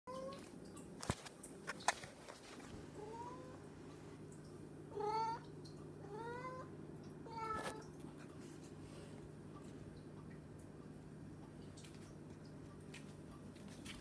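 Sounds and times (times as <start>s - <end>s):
cat meowing: 7.3s - 7.9s.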